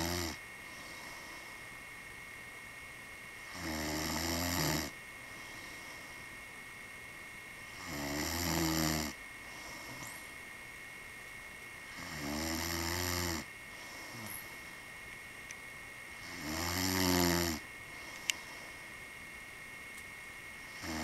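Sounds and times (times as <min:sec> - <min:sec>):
man snoring: 0:00.0 - 0:00.4, 0:03.4 - 0:05.0, 0:07.7 - 0:10.1, 0:11.9 - 0:14.4, 0:16.2 - 0:17.6, 0:20.7 - 0:21.0.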